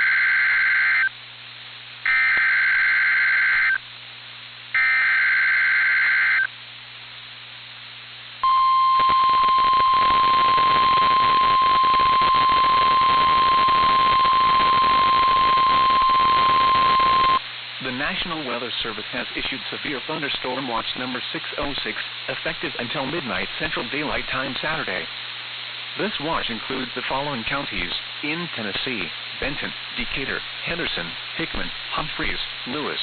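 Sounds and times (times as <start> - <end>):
steady warning tone: 8.4 - 17.4
screeching data header bursts: 9.0 - 17.4
radio static: 9.0 - 33.0.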